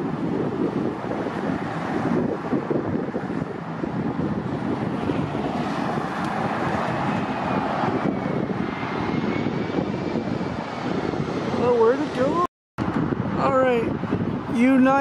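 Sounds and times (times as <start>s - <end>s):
jet engines rushing: 0.0s - 15.0s
wind buffeting microphone: 0.0s - 15.0s.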